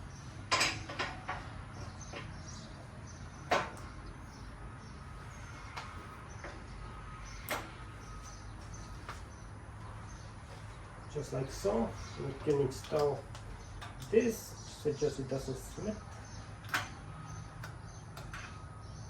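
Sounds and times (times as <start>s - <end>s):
steady low hum: 0.0s - 19.0s
metal parts knocking and clanking: 0.4s - 2.3s.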